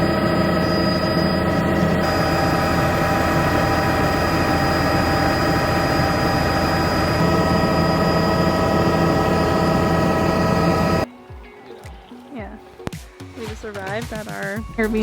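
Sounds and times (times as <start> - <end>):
helicopter engine and rotor: 0.0 - 11.1
high whine: 0.0 - 11.1.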